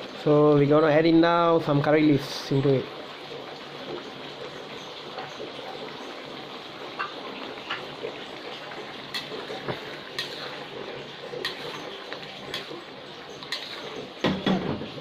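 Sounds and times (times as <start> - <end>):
food hissing in pot: 8.6 - 14.2.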